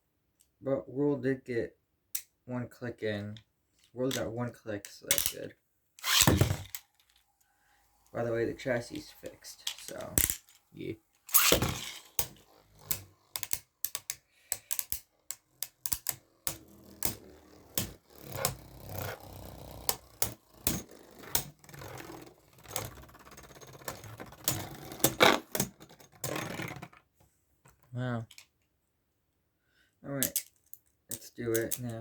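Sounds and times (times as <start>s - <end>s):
spinning tops hitting: 6.0s - 6.8s, 11.3s - 19.2s
spinning tops whirring: 6.0s - 6.8s, 8.2s - 25.5s
plastic clicks and clacks: 11.2s - 17.2s.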